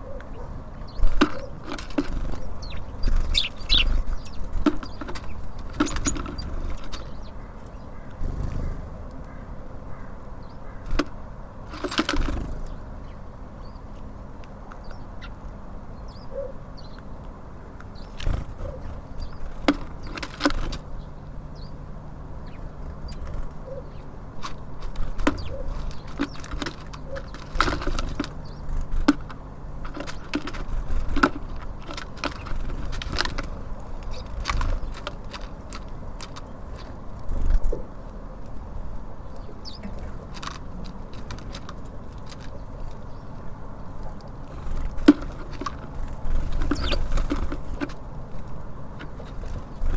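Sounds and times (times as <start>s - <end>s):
birds pecking and landing: 0.1s - 9.4s, 10.4s - 16.2s, 16.8s - 49.9s
wings fluttering: 0.3s - 9.0s, 10.8s - 12.8s, 18.0s - 21.1s, 22.4s - 37.8s, 44.0s - 49.9s.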